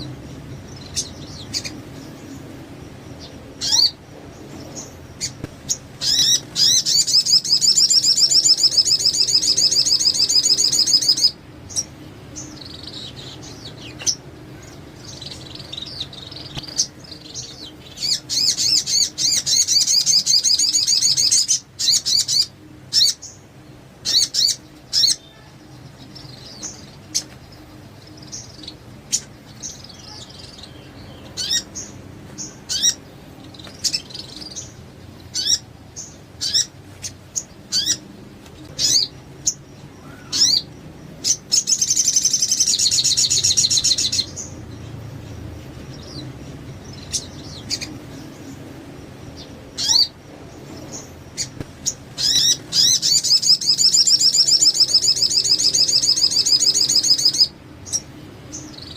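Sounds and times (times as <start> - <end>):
songbird chirps and whistles: 4.8 - 14.2, 15.0 - 23.3, 52.2 - 58.0
fast high bird trill: 51.0 - 58.0.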